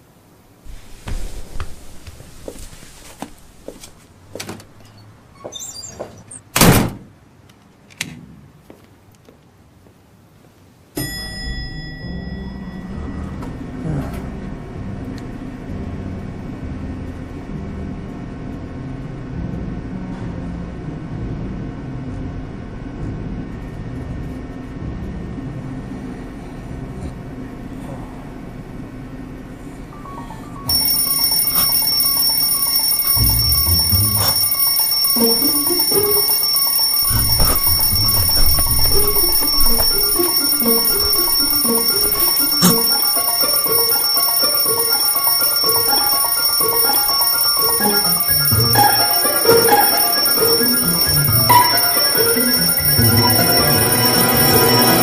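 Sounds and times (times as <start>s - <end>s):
high tinkle: 11.0s - 13.4s, 30.7s - 55.0s.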